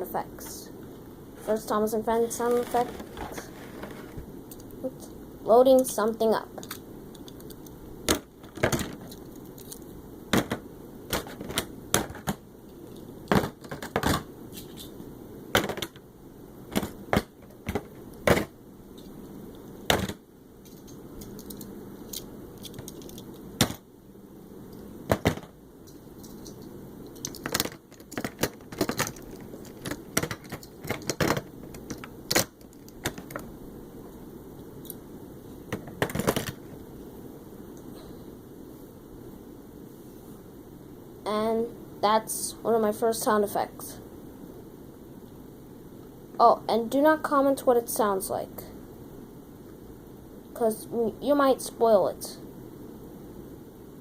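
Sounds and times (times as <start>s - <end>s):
low background noise: 0.0s - 54.0s
sharp clicks and knocks: 25.1s - 33.5s.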